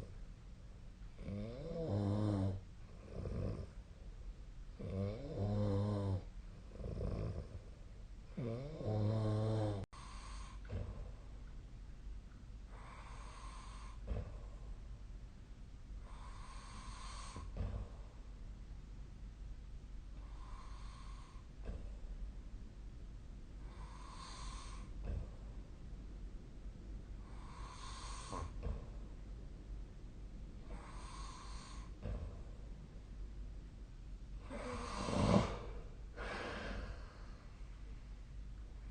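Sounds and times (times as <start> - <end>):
quiet breathing: 1.0 - 11.6, 12.4 - 15.1, 15.9 - 18.5, 20.0 - 22.4, 23.5 - 25.9, 27.0 - 29.2, 30.4 - 32.7, 34.2 - 38.9
loud buzzing snore: 1.2 - 3.8, 4.8 - 7.6, 8.3 - 10.8, 16.0 - 17.6, 23.7 - 24.9, 27.3 - 28.6, 30.7 - 32.0, 34.4 - 37.0
low snort: 4.8 - 7.6, 27.3 - 28.9, 34.4 - 37.4.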